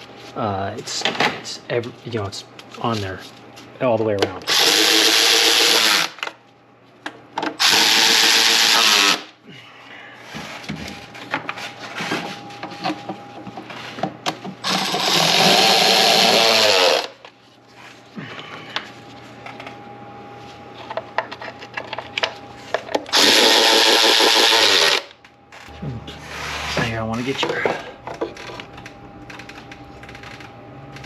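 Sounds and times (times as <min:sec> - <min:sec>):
cordless power tool spinning bolts: 0:04.5 - 0:06.2, 0:07.6 - 0:09.2, 0:14.6 - 0:17.1, 0:23.1 - 0:25.1.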